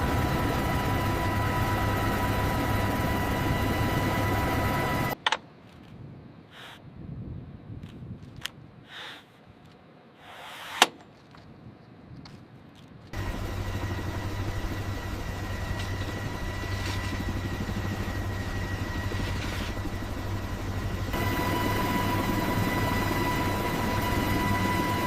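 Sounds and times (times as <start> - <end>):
helicopter engine running: 0.0 - 5.2, 13.1 - 25.0
quiet rumble: 13.1 - 24.2.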